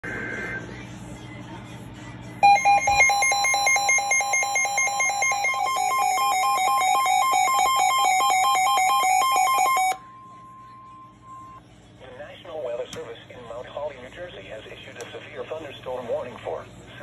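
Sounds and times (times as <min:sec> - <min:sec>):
rapidly alternating alarm beeps: 0:02.4 - 0:10.0, 0:10.6 - 0:11.6
steady warning alert tone: 0:02.4 - 0:10.0.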